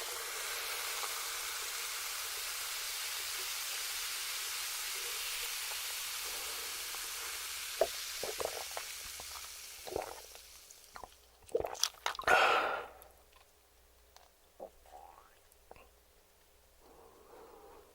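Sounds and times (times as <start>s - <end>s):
steady hiss: 0.0s - 11.4s.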